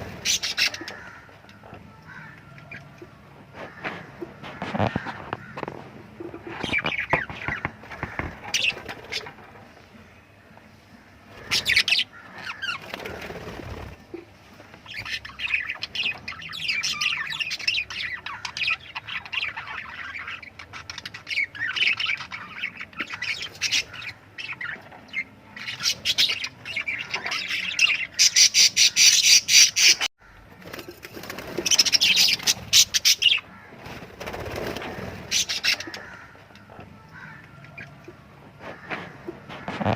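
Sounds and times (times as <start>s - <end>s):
wings fluttering: 3.6s - 9.5s, 12.6s - 14.1s, 30.6s - 33.1s, 33.8s - 36.2s.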